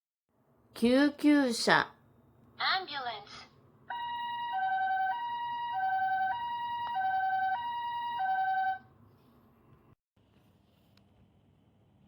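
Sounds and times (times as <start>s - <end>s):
ambulance two-tone siren: 3.9s - 8.8s.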